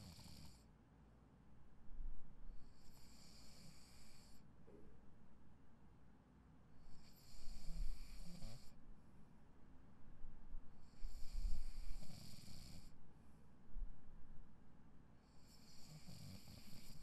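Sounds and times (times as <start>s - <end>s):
person snoring: 0.0s - 0.6s, 7.0s - 8.8s, 10.8s - 12.9s, 15.4s - 17.0s.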